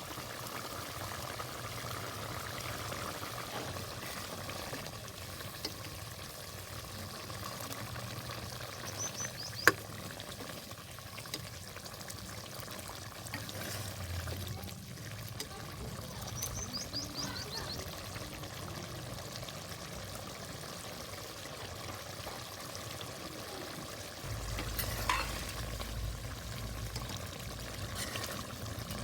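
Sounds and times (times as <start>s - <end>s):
curry bubbling and sizzling: 0.0s - 29.0s
low hum: 24.3s - 28.6s.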